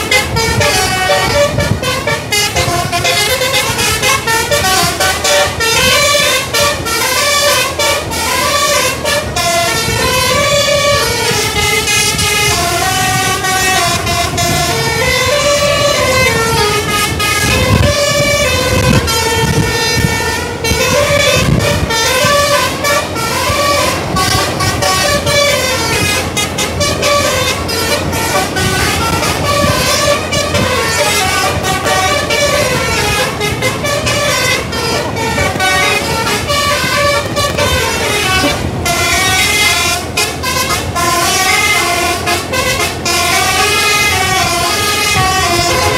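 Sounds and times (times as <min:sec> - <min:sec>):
multi-tone bus air horn melody: 0:00.0 - 0:45.9.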